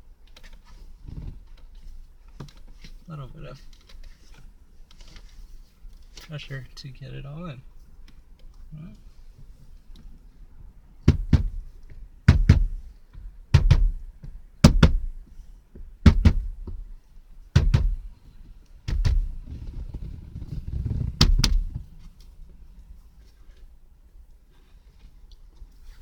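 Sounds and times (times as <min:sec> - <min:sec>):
hand thumping dash trim panel: 0:11.1 - 0:12.9, 0:13.5 - 0:15.3, 0:16.0 - 0:16.9, 0:17.6 - 0:18.1, 0:18.9 - 0:19.5, 0:21.1 - 0:21.8.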